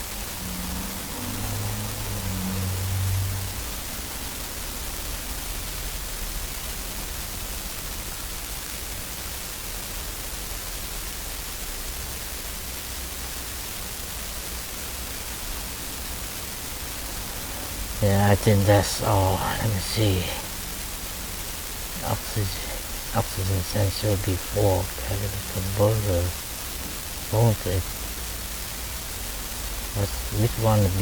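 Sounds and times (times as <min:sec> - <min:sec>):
steady hiss: 0:00.0 - 0:31.0
faint low rumble: 0:14.9 - 0:31.0
low hum: 0:16.6 - 0:31.0.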